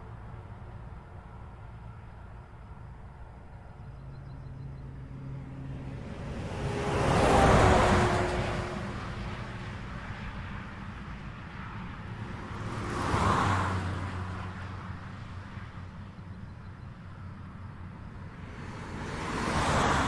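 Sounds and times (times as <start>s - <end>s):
low traffic rumble: 0.0s - 20.0s
vehicle passing: 4.7s - 9.8s, 18.3s - 20.0s.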